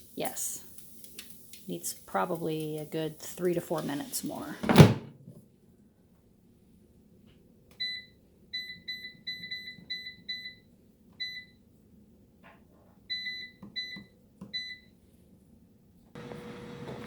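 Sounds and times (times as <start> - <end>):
air fryer button beeps: 7.8 - 11.6, 13.1 - 14.9.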